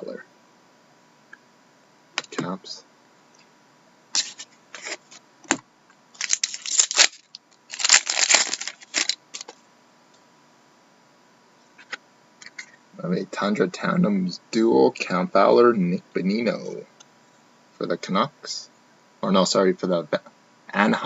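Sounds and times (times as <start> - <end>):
plastic card sleeves rustling: 4.2 - 5.2, 6.2 - 9.6.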